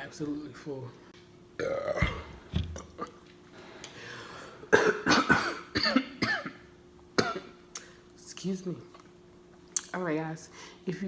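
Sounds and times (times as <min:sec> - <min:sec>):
woman clearing her throat: 0:04.7 - 0:07.6
woman coughing: 0:04.7 - 0:07.6.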